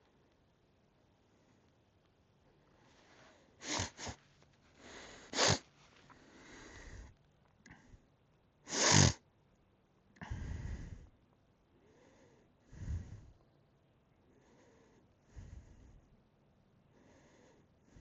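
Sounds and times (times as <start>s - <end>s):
dog sneezing: 3.6s - 4.2s, 5.3s - 5.7s, 8.7s - 9.2s
dog sniffing: 3.6s - 4.2s, 4.8s - 5.7s.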